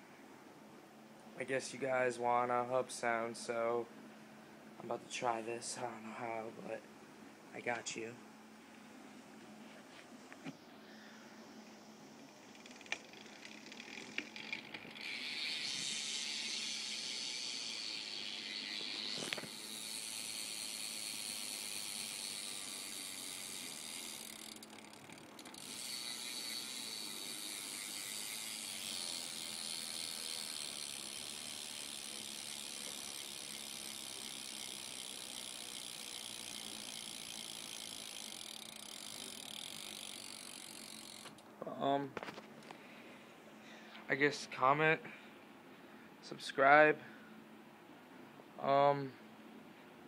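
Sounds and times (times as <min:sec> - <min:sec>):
bicycle hub ratcheting: 0:12.2 - 0:41.4.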